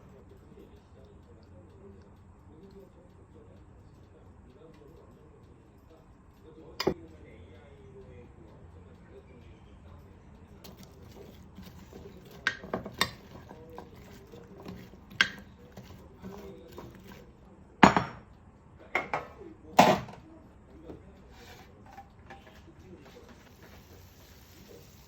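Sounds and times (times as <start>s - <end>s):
dishes and cutlery clinking: 10.6s - 18.3s.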